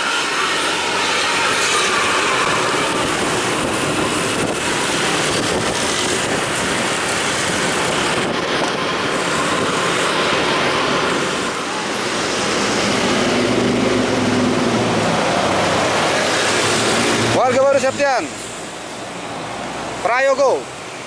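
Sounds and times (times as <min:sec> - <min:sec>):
buses driving at speed: 0:00.0 - 0:21.0.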